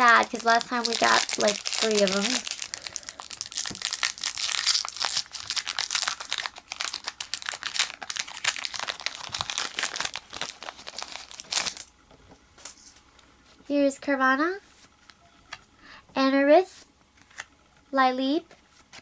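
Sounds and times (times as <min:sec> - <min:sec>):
foil wrapper crinkling and tearing: 0:00.0 - 0:11.9.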